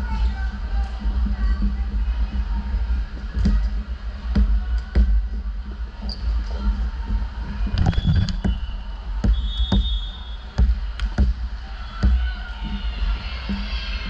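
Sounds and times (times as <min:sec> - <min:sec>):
low rumble of gym noise: 0:00.0 - 0:14.0.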